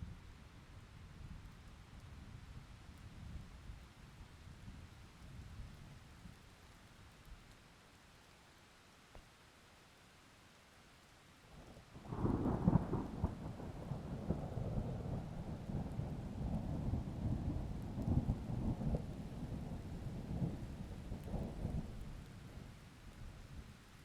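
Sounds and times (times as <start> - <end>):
thunder rolling rumble: 12.1 - 21.8.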